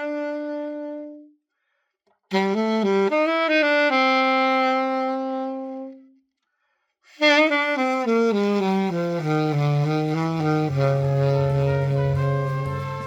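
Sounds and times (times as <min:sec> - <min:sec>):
solo saxophone: 0:00.0 - 0:01.4, 0:02.1 - 0:06.4, 0:07.0 - 0:13.0.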